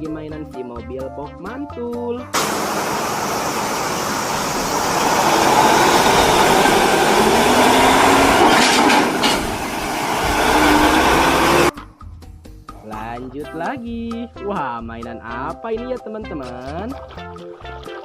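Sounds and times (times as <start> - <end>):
water spattering: 2.4 - 11.5
faint rising tone: 2.4 - 11.7
water spray rushing: 2.4 - 11.7.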